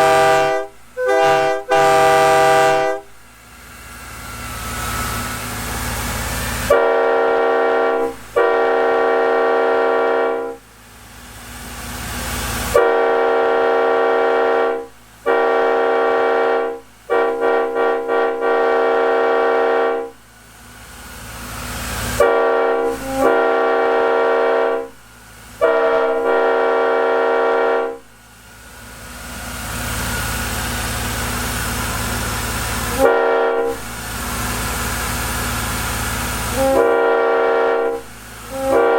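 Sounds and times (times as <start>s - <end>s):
train air horn blasts: 0.0s - 3.2s, 4.2s - 10.7s, 12.5s - 20.3s, 22.0s - 28.2s, 30.2s - 34.8s, 35.6s - 38.9s
rushing noise: 2.9s - 6.9s.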